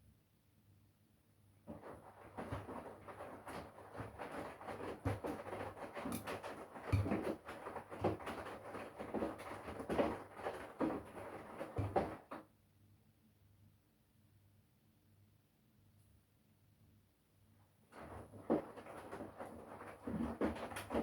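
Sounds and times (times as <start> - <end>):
laundry and water sloshing: 1.7 - 12.4, 17.9 - 21.0
washing machine motor hum: 17.9 - 21.0.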